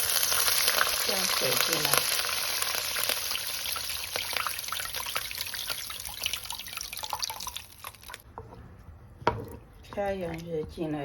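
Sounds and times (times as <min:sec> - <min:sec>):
water sizzling in a hot pan: 0:00.0 - 0:08.2.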